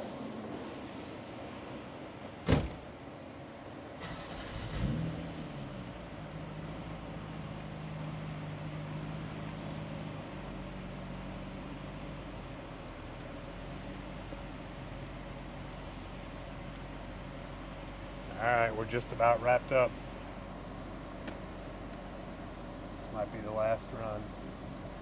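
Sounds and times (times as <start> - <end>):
car engine starting and idling: 3.9 - 25.0.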